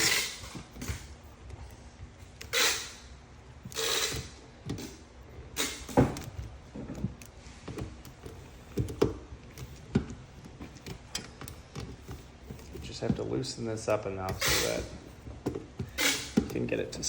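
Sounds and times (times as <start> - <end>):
scraping rasps: 3.7 - 17.0.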